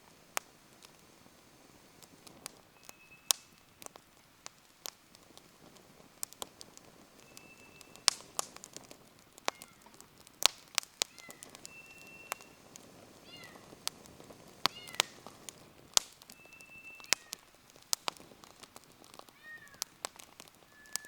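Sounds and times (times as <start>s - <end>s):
sharp pops and snaps: 0.0s - 21.0s
wood fire crackling: 0.0s - 21.0s.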